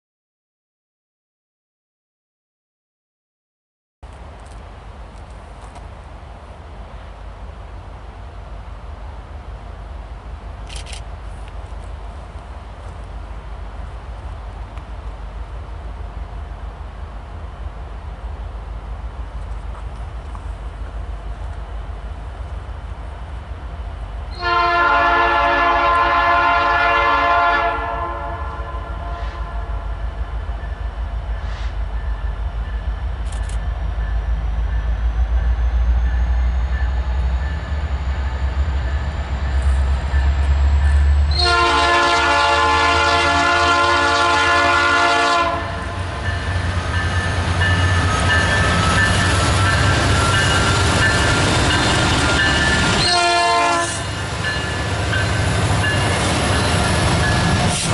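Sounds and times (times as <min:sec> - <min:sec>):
train wheels on rail: 0:04.0 - 0:57.9
locomotive air horn blasts: 0:24.3 - 0:30.1, 0:41.3 - 0:46.0, 0:52.8 - 0:54.1.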